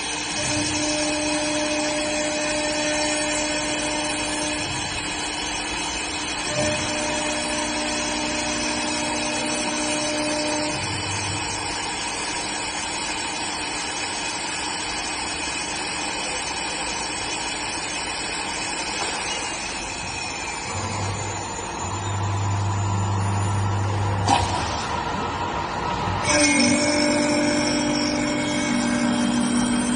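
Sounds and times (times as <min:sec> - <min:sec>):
steady motor tone: 0:00.0 - 0:29.9
wood lathe cutting: 0:26.2 - 0:29.9.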